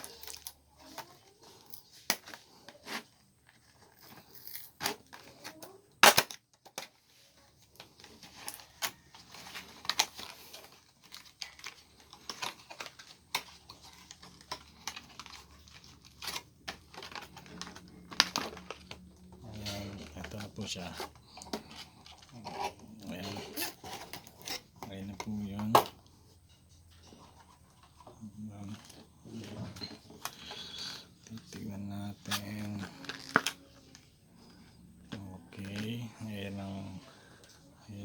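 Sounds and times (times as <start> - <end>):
cardboard tearing: 32.2 - 34.0.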